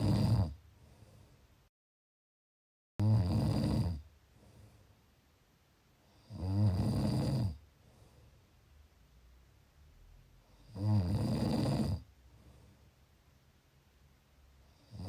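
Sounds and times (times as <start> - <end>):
person snoring: 0.0 - 0.6, 3.0 - 4.0, 6.2 - 7.6, 10.6 - 12.1, 14.8 - 15.0
quiet breathing: 0.0 - 1.7, 4.0 - 5.2, 7.0 - 9.4, 11.8 - 13.4.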